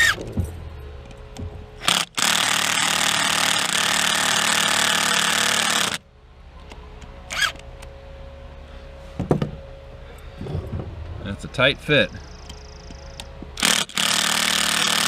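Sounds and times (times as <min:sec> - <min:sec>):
cordless drill driving a screw: 0:01.8 - 0:06.0, 0:13.6 - 0:15.0.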